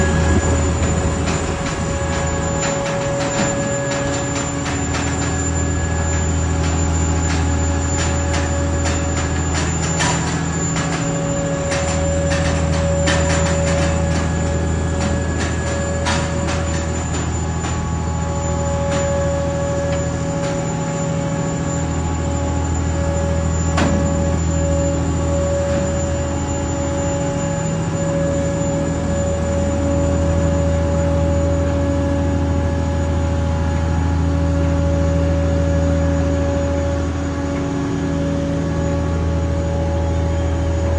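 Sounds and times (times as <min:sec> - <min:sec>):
held squeal tone: 0:00.0 - 0:40.8
heavy structure creaking and squealing: 0:00.0 - 0:40.9
heavy truck rumbling: 0:00.0 - 0:40.9
low engine drone: 0:00.0 - 0:40.9.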